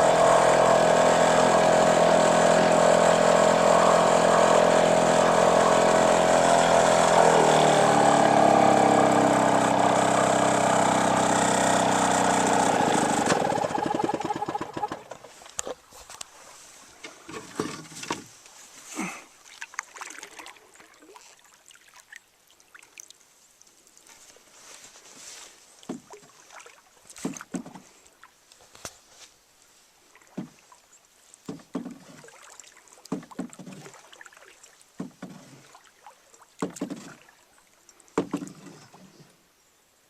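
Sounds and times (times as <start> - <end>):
small outboard motor running: 0.0 - 15.5, 36.6 - 37.2, 38.2 - 39.2
light water splashes: 18.3 - 29.0, 29.6 - 39.4
water trickling: 30.1 - 38.6.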